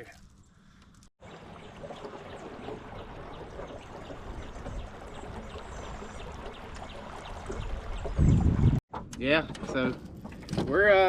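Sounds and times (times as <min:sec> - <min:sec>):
water gurgling against boat hull: 0:01.2 - 0:08.8.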